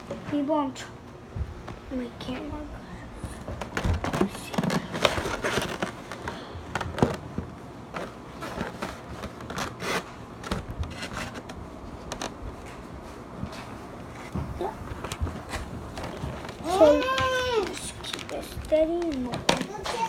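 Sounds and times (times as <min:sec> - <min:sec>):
packaging crinkling and scraping: 0:03.2 - 0:12.8, 0:13.6 - 0:20.0.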